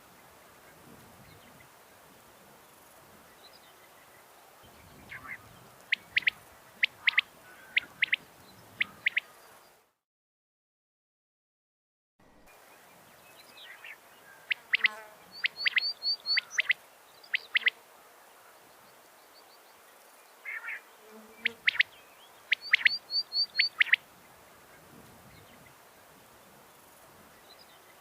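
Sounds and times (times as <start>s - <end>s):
quail calling: 5.1s - 8.2s, 8.8s - 9.4s, 14.4s - 17.8s, 20.5s - 20.8s, 21.4s - 21.9s, 22.5s - 24.0s.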